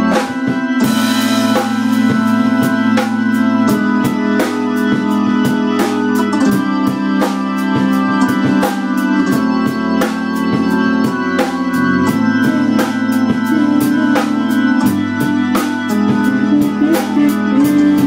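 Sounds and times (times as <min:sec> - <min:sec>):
steady beat: 0:00.0 - 0:18.0
sustained organ chords: 0:00.0 - 0:18.0.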